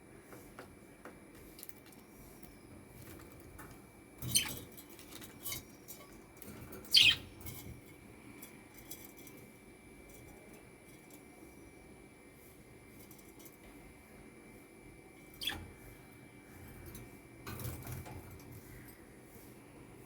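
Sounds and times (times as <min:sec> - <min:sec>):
lovebird chirps: 0:06.9 - 0:07.3.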